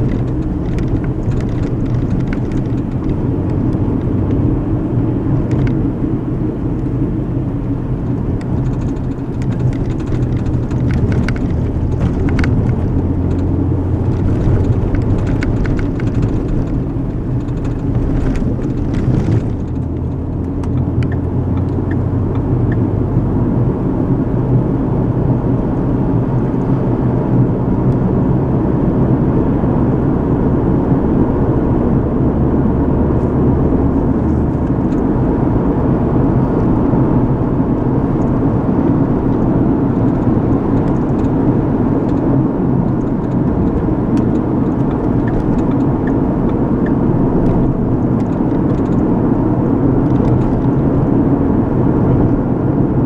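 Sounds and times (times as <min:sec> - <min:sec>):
car road and engine noise: 0:00.0 - 0:53.0.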